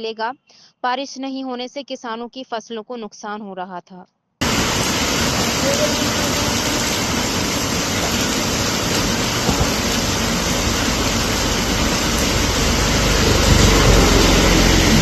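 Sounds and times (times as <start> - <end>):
heavy rain falling: 4.4 - 15.0
vehicle engine hum: 4.4 - 15.0.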